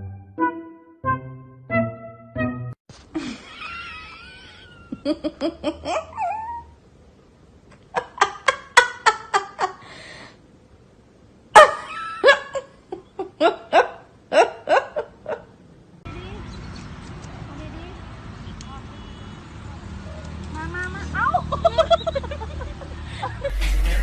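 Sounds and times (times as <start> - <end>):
people laughing: 3.2 - 6.2, 21.3 - 24.0.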